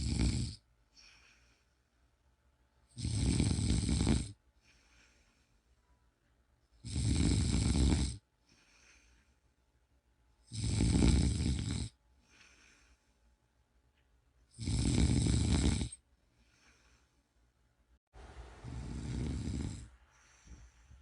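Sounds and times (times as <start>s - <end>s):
person snoring loudly: 0.0s - 0.6s, 2.9s - 4.4s, 6.8s - 8.2s, 10.5s - 12.0s, 14.6s - 16.0s, 18.6s - 20.0s
faint breath: 0.9s - 2.1s, 4.5s - 6.0s, 8.4s - 9.6s, 12.2s - 13.5s, 16.2s - 17.5s, 18.5s - 21.0s.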